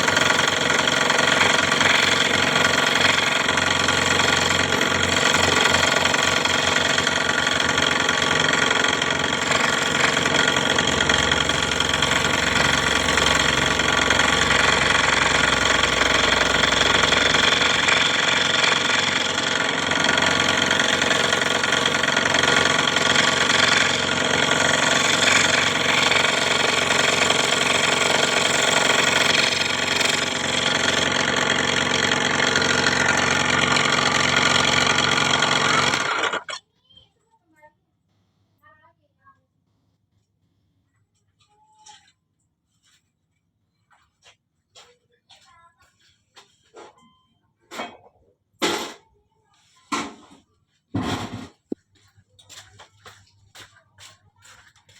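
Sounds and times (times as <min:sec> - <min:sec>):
electric scroll saw running: 0:00.0 - 0:36.6.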